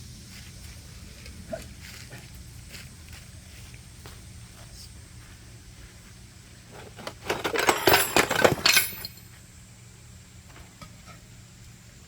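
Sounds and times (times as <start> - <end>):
pottery shards clinking: 7.2 - 9.2.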